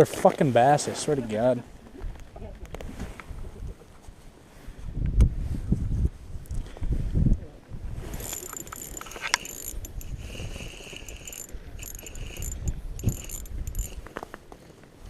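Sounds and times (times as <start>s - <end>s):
fishing reel gears whirring: 8.0s - 14.1s.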